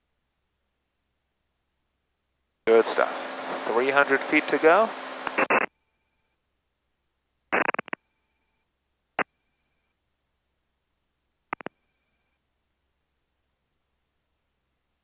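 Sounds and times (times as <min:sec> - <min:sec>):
sharp clicks: 0:07.6 - 0:08.0, 0:11.5 - 0:11.8.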